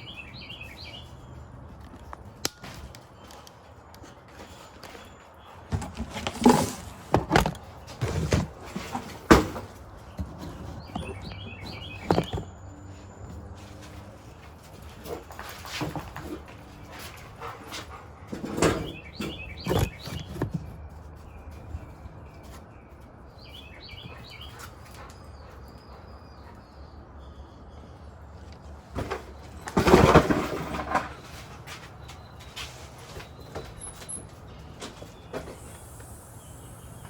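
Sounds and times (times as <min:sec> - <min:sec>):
small birds chirping: 0:00.0 - 0:06.8, 0:09.9 - 0:15.4, 0:16.4 - 0:29.6, 0:31.2 - 0:37.0
rake scraping ground: 0:05.7 - 0:12.4.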